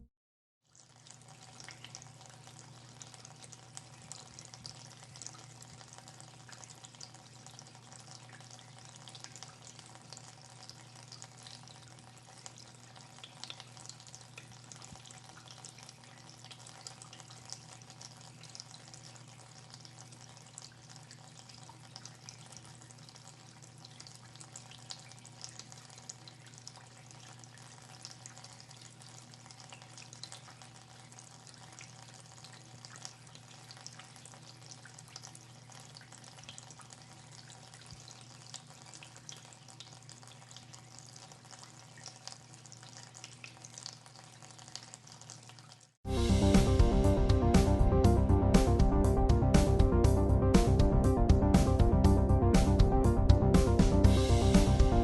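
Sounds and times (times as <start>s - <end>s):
low hum: 46.1s - 55.0s.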